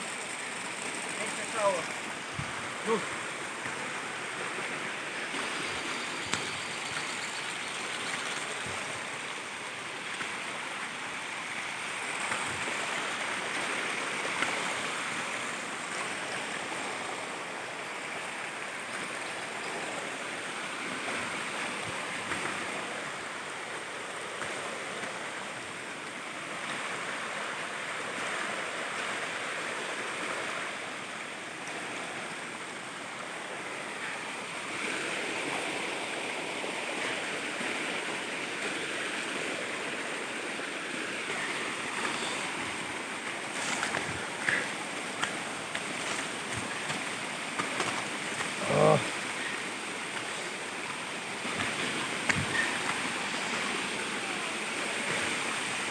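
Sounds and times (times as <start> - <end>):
waterfall roaring: 0.7 - 6.7, 31.7 - 55.9.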